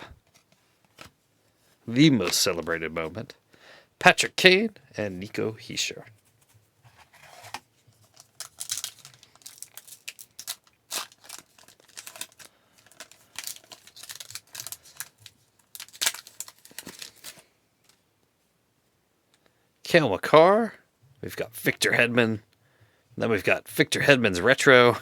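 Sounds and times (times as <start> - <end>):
wrapper tearing and crinkling: 7.4 - 17.4.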